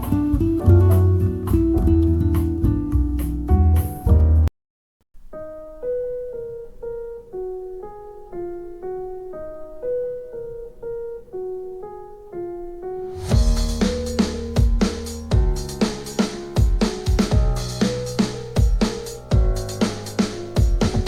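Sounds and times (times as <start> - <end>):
sparse piano melody: 0.0 - 4.5, 5.2 - 21.0
electronic music with heavy bass: 13.3 - 21.0.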